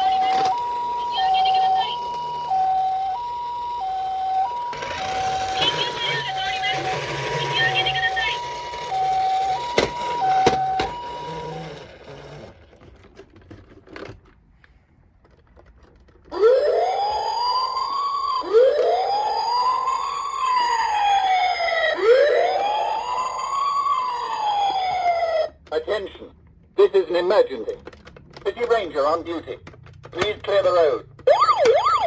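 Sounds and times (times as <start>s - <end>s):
toy electronic siren: 0.0s - 12.6s, 16.3s - 25.6s, 31.2s - 32.0s.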